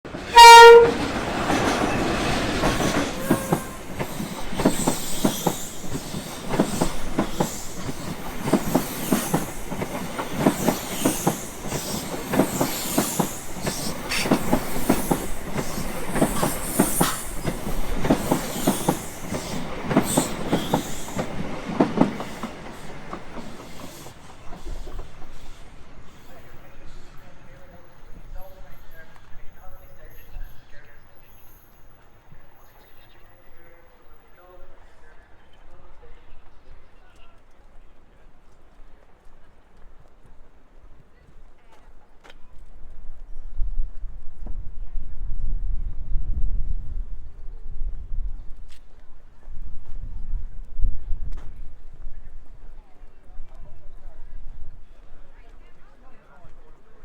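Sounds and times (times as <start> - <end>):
train wheels clicking over rail joints: 0.1 - 26.7.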